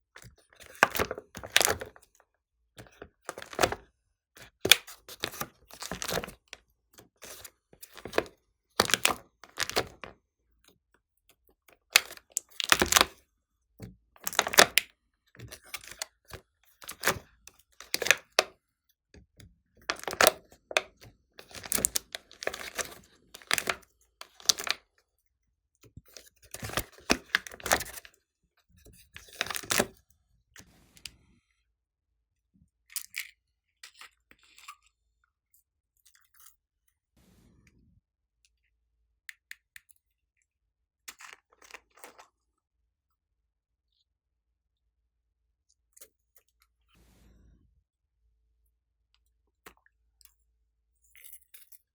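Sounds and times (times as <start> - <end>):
slime clicking and crackling: 12.0 - 13.1, 14.2 - 14.8.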